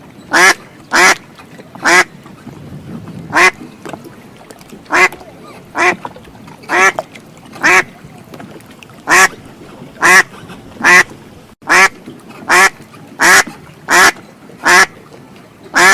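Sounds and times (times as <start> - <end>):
duck quacking: 0.3 - 1.2, 1.8 - 2.1, 3.3 - 3.6, 4.9 - 5.2, 5.8 - 6.0, 6.7 - 7.0, 7.6 - 7.9, 9.1 - 9.3, 10.0 - 11.1, 11.7 - 11.9, 12.5 - 14.9.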